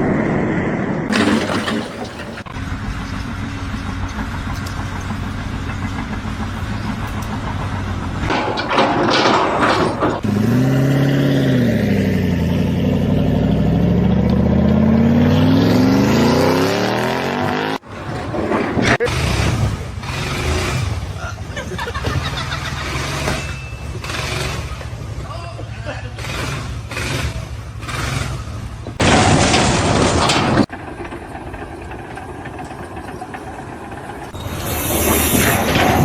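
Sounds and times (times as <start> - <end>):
engine revving: 0.0 - 25.3, 26.0 - 30.4
short burst of clatter: 1.1 - 2.6, 8.3 - 10.3.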